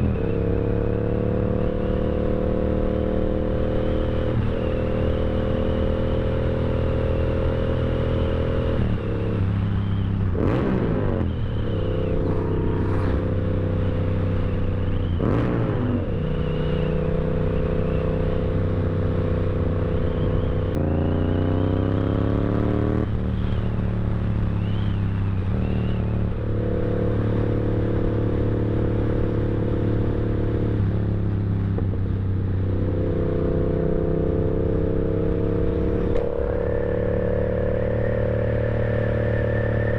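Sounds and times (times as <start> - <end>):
motorcycle engine running: 16.0 - 39.9.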